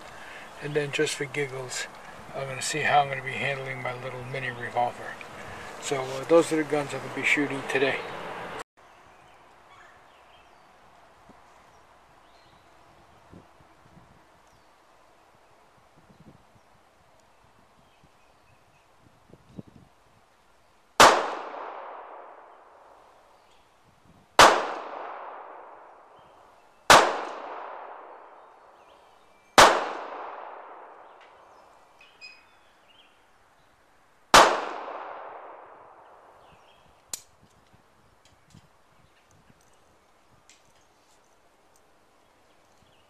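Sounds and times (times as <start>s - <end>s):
handgun shots echoing: 21.0s - 22.6s, 24.4s - 25.8s, 26.9s - 28.5s, 29.6s - 31.4s, 34.4s - 36.1s.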